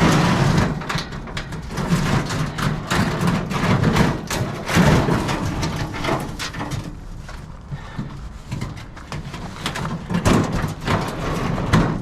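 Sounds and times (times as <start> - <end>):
scrap metal clattering in dumpster: 0.0 - 12.0.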